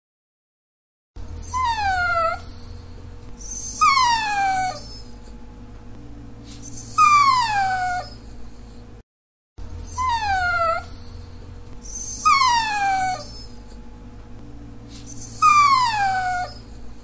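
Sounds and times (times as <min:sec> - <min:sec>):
dog whining: 0:01.3 - 0:05.4, 0:06.4 - 0:08.9, 0:09.8 - 0:13.9, 0:14.9 - 0:17.0.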